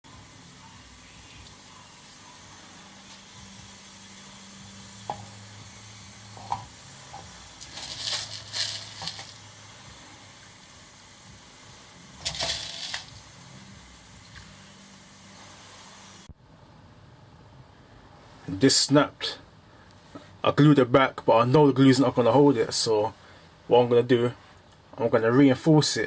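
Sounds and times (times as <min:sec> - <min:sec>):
background hiss and low hum: 0:00.0 - 0:26.0
rustling: 0:07.6 - 0:09.4.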